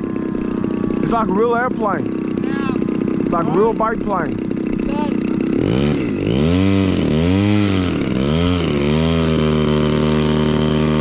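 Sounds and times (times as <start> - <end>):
model airplane gas engine: 0.0 - 11.0.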